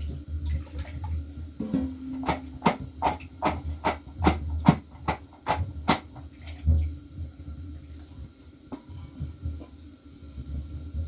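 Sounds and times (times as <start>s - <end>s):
sharp knocks: 1.6s - 6.0s.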